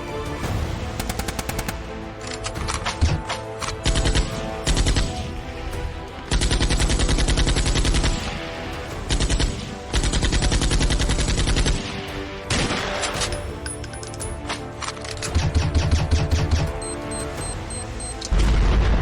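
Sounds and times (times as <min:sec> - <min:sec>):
music score sustained tones: 0:00.0 - 0:19.0
automatic gunfire bursts: 0:01.0 - 0:01.8.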